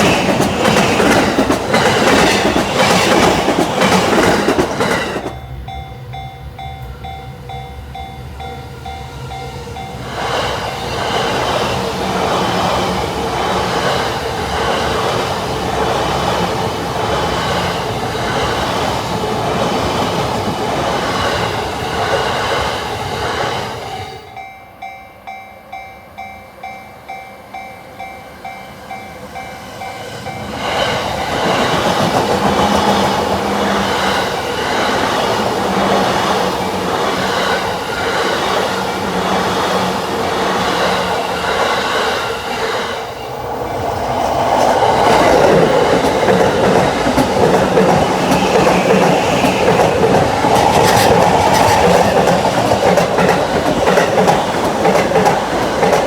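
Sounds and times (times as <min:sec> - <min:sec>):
train wheels clattering: 0:00.0 - 0:05.4, 0:30.3 - 0:56.0.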